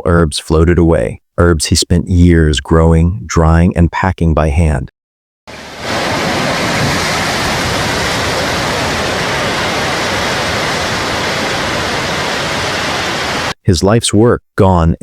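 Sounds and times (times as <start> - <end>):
floodwater rushing: 5.5 - 13.6.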